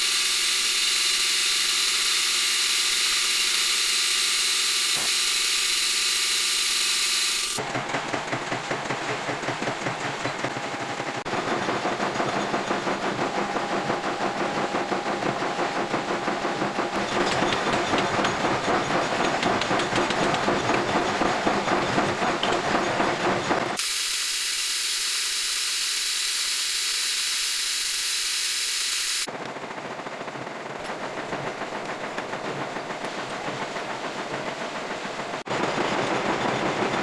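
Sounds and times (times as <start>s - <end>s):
lathe cutting metal rattling: 0.0s - 8.5s, 11.3s - 29.3s.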